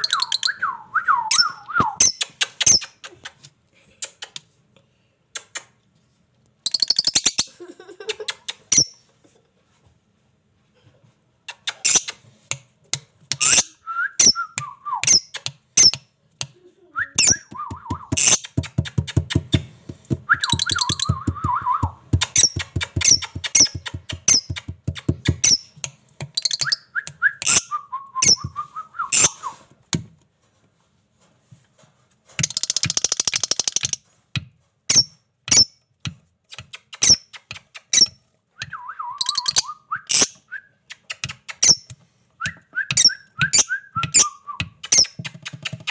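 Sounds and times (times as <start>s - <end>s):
parrots chirping and whistling: 0.0s - 3.0s, 6.7s - 7.5s, 8.7s - 9.0s, 11.5s - 12.2s, 13.4s - 16.0s, 17.0s - 19.6s, 20.3s - 25.7s, 26.4s - 29.6s, 36.5s - 38.2s, 38.8s - 41.9s, 42.8s - 45.9s.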